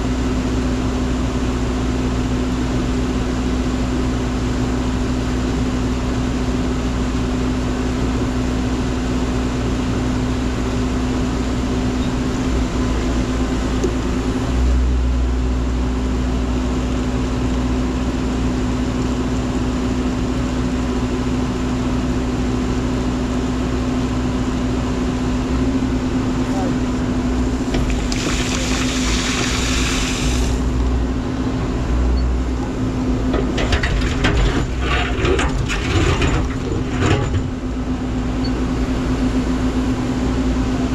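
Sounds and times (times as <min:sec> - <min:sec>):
excavator engine running: 0:19.1 - 0:40.9.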